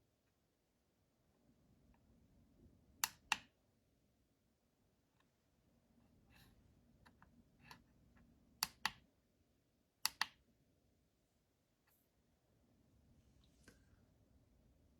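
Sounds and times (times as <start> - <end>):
plastic buttons clicking: 10.0 - 10.4.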